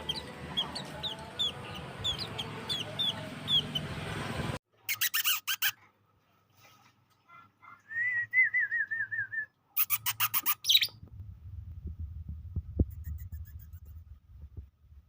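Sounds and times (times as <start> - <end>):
songbird singing: 0.0 - 4.2
low rumble: 11.0 - 15.0.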